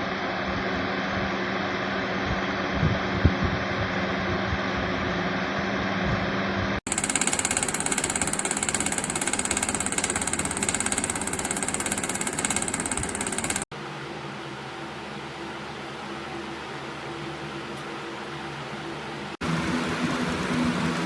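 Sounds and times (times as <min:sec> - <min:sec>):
box fan whooshing hum: 0:06.1 - 0:15.2, 0:17.4 - 0:21.0.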